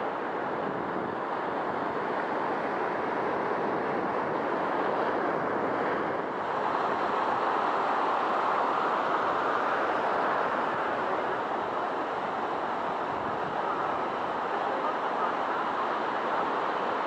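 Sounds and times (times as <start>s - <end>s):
sea surf washing on shore: 0.0s - 17.0s.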